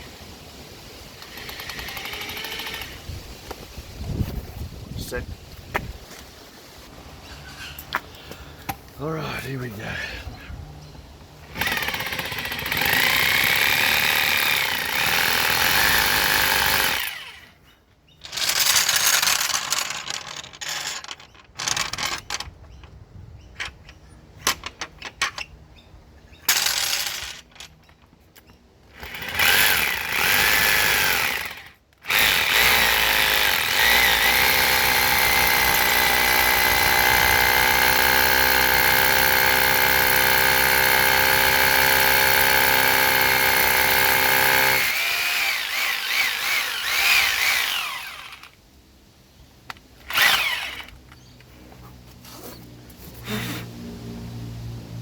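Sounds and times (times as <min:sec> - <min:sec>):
hammer drill boring into concrete: 0:01.2 - 0:03.0, 0:11.5 - 0:17.5, 0:29.0 - 0:48.5, 0:50.0 - 0:51.0.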